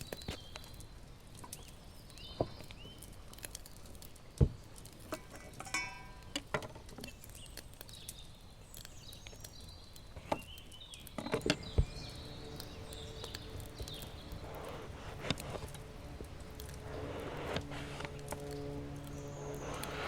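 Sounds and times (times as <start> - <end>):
birds chirping: 7.2 - 20.0.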